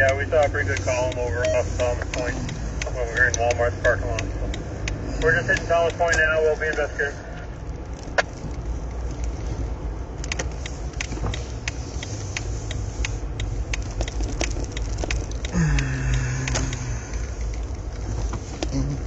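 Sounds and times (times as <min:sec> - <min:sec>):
low steady tone: 0:00.0 - 0:07.5
car interior rumble: 0:00.0 - 0:19.0.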